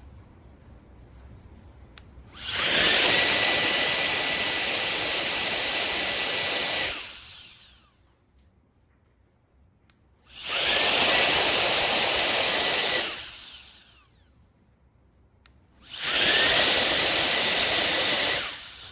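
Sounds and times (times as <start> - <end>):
air duster motor whine: 2.3 - 8.0, 10.2 - 14.2, 15.8 - 18.9.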